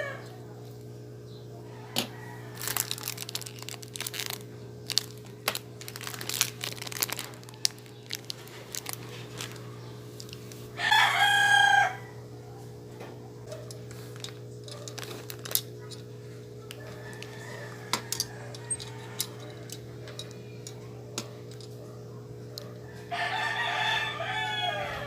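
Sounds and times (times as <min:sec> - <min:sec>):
rooster crowing: 0:00.0 - 0:00.4, 0:01.5 - 0:03.5, 0:07.2 - 0:08.1, 0:10.7 - 0:12.5, 0:16.7 - 0:20.6, 0:22.6 - 0:25.0
steady low hum: 0:00.0 - 0:25.0
packaging clicks and rustles: 0:02.5 - 0:10.6, 0:13.6 - 0:21.7.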